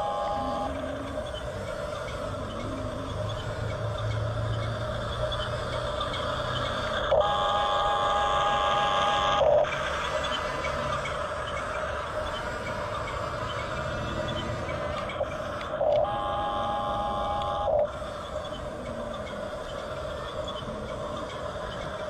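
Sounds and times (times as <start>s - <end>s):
horn-like tone: 0.0s - 0.8s, 7.2s - 9.6s, 15.8s - 17.9s
toy motors whining: 0.0s - 22.0s.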